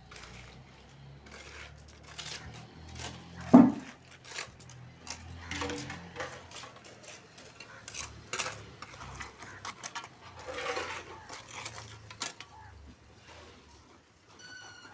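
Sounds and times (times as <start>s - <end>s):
clinks and knocks: 3.4s - 4.0s.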